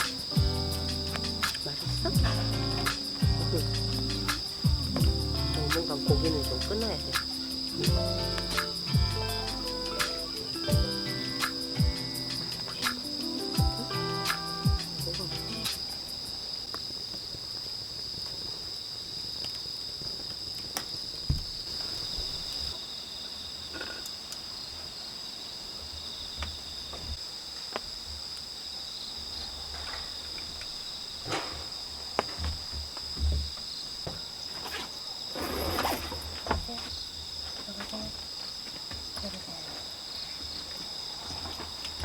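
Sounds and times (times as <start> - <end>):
low thumps: 0.0 - 14.0
crickets chirping: 0.0 - 42.0.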